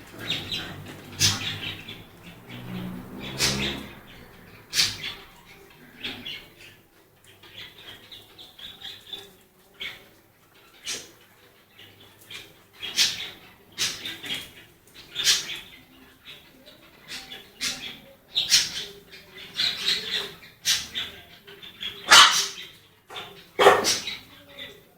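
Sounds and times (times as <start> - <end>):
puppies squeaking and whimpering: 0.0 - 6.7.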